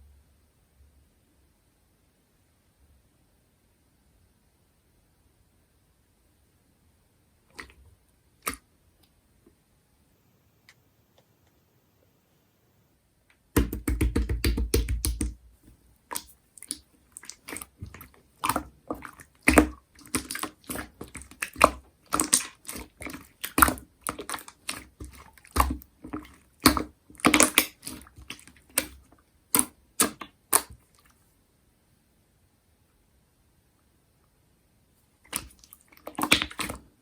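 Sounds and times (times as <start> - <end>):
slime squishing with wet pops: 8.4 - 8.6, 13.4 - 31.2, 35.2 - 37.0.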